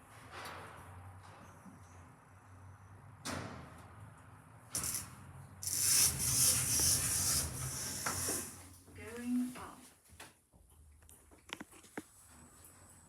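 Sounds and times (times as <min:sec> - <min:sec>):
loud rushing hiss: 0:04.8 - 0:08.6.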